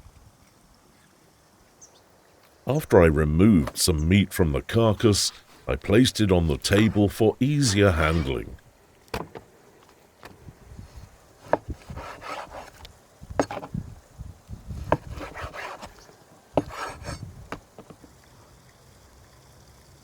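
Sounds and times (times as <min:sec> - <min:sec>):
sharp knocks: 0:09.2 - 0:09.4
knife slicing raw meat: 0:14.9 - 0:16.0, 0:16.6 - 0:17.2.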